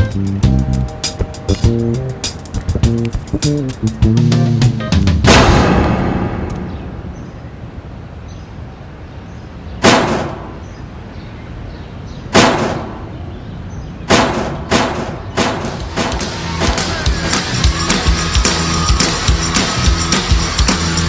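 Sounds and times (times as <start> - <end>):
sharp percussion hits: 0.0 - 7.6, 14.1 - 20.8.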